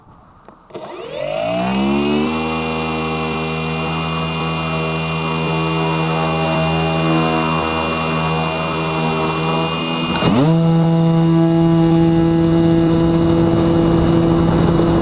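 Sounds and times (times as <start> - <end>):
electric motor spinning propeller: 0.7 - 15.0.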